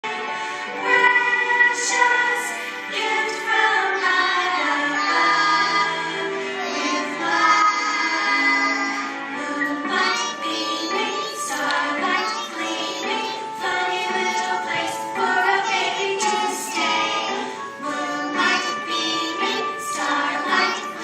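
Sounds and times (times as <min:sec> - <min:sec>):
children singing together: 0:00.8 - 0:21.0.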